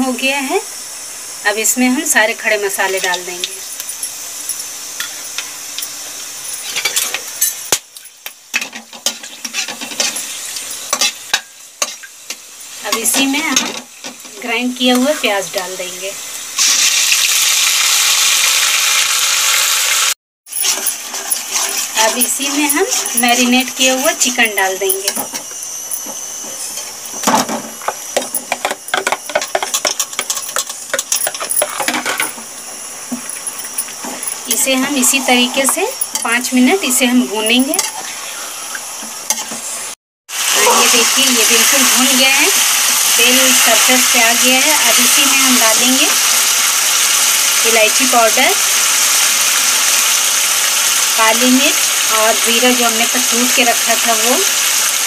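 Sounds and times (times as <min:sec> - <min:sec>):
frying hiss: 0:00.0 - 0:55.0
spices sizzling in hot oil: 0:00.0 - 0:55.0
metal spoon scraping a pot: 0:20.5 - 0:25.4.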